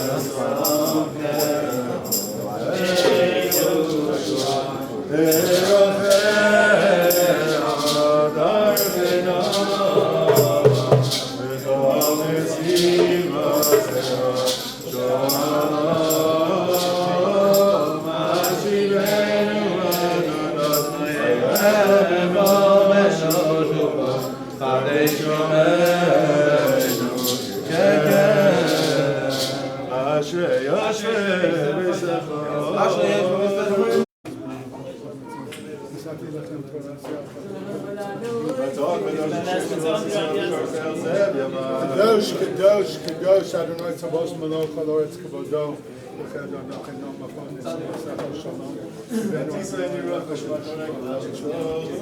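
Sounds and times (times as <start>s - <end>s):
men singing together: 0.0s - 34.1s, 38.8s - 43.2s
steady percussive beat: 5.2s - 24.3s.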